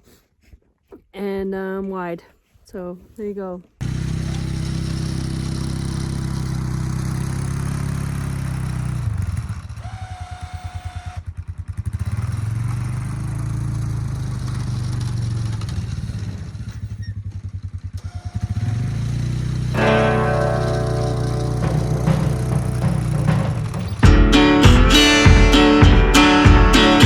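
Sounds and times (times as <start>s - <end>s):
quad engine running: 3.8s - 24.1s.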